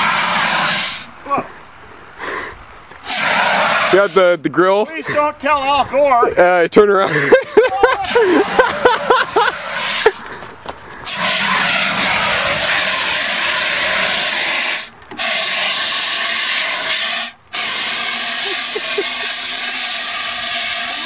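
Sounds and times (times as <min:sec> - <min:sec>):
fire extinguisher hissing: 0:00.0 - 0:01.1, 0:03.0 - 0:04.4, 0:08.0 - 0:10.3, 0:11.0 - 0:21.0.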